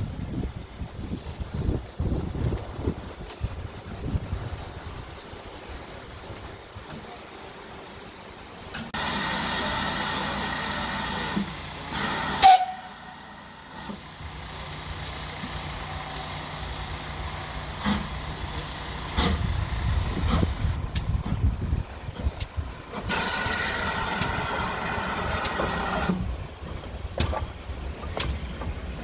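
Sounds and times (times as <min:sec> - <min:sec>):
steam locomotive hissing steam: 0:03.5 - 0:26.4.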